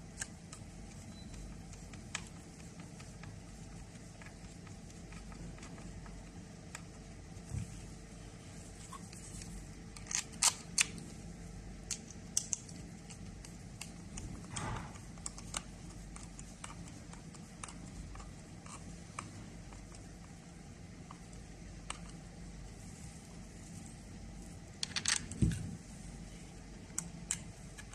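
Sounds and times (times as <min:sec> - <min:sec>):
small hard objects clicking: 0:11.9 - 0:13.2.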